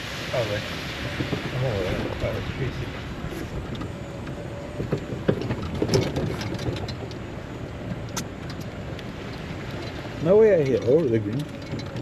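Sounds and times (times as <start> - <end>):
heavy rain falling: 0.0 - 3.6
steady low rumble: 0.0 - 12.0.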